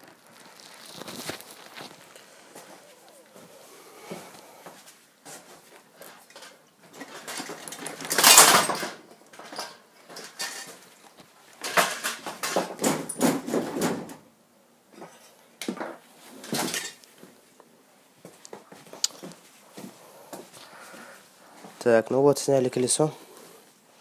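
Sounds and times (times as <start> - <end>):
metal tools clanking and scraping: 6.0 - 10.9, 16.4 - 17.1.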